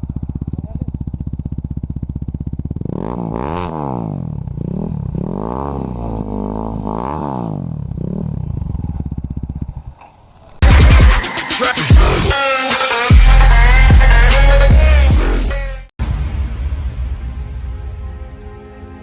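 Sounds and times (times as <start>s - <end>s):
motorcycle engine idling and revving: 0.0s - 11.2s.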